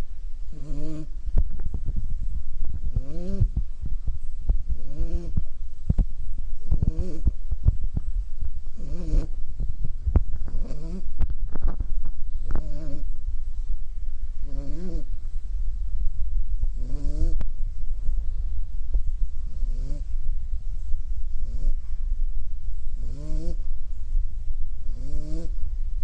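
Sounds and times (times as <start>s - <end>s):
puppy snoring: 0.0s - 3.8s, 4.6s - 7.5s, 8.6s - 9.5s, 10.2s - 13.3s, 14.4s - 15.2s, 16.0s - 17.9s, 19.2s - 22.0s, 22.8s - 23.9s, 24.8s - 25.8s
steady low rumble: 0.0s - 26.0s.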